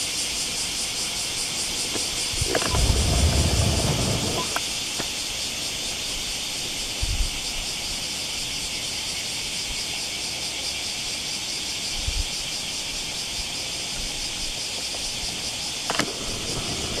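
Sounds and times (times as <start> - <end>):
cicadas buzzing: 0.0 - 17.0
low bumps: 2.0 - 4.6.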